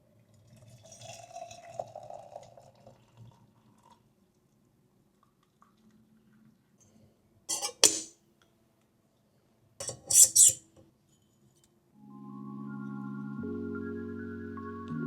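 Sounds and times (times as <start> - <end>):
cutlery and dishes clinking: 7.5 - 8.2, 9.8 - 10.6.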